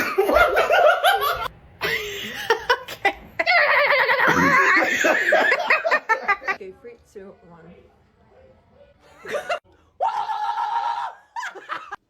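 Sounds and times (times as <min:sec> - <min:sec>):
people laughing: 0:00.0 - 0:06.6, 0:09.1 - 0:09.6.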